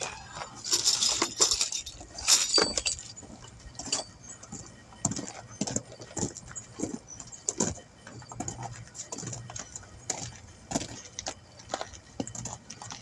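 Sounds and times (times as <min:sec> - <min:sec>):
small metal parts clinking: 0:00.4 - 0:04.2.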